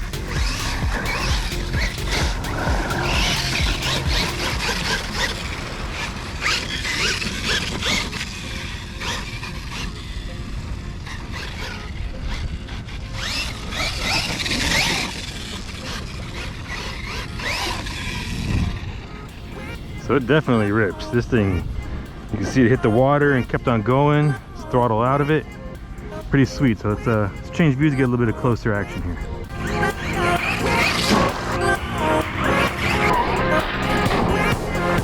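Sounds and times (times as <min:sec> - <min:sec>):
steady low rumble: 0:00.0 - 0:07.2, 0:18.4 - 0:35.0
electric motor whining: 0:00.0 - 0:22.4, 0:29.2 - 0:35.0.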